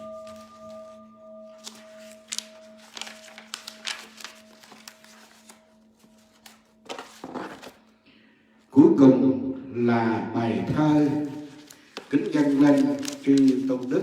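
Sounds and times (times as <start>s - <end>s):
bowl bell ringing: 0.0s - 6.9s.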